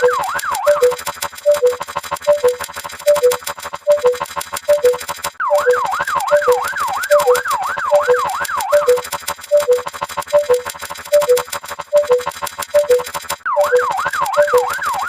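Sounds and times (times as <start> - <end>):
yelp siren wailing: 0.0 - 4.2, 4.8 - 9.0, 13.5 - 15.0
two-tone siren: 0.0 - 15.0.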